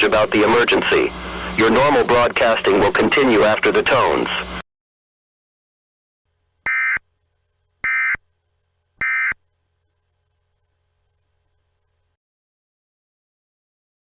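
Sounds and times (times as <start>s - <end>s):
short digital data tones: 6.6s - 8.4s, 9.0s - 12.2s.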